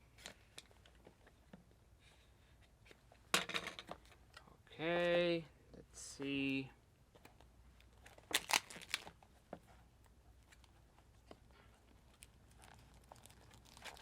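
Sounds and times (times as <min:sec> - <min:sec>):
faint clicks and rustles: 0:07.1 - 0:14.0
packaging tearing and crinkling: 0:08.1 - 0:09.2, 0:12.1 - 0:14.0.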